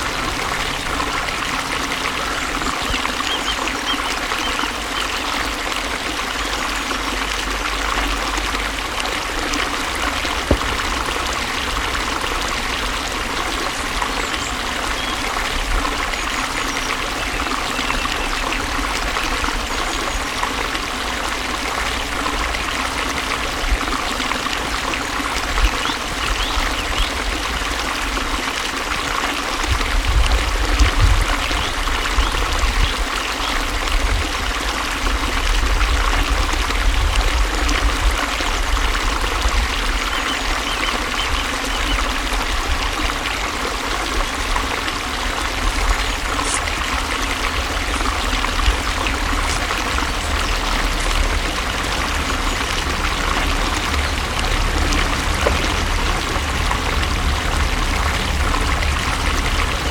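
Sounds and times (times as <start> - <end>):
flowing water: 0.0 - 59.9
low bumps: 10.3 - 13.0, 45.5 - 59.9.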